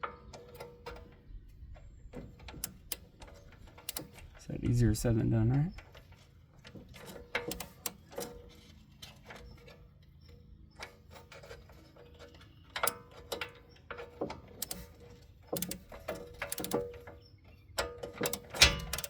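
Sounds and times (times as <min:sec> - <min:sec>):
metal clicks and knocks: 0:00.0 - 0:04.5, 0:05.4 - 0:09.8, 0:10.7 - 0:19.0
sharp metal tap: 0:18.6 - 0:19.0.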